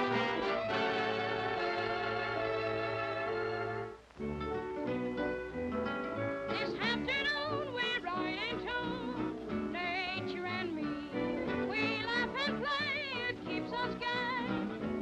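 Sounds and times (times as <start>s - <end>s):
orchestra playing: 0.0s - 4.0s.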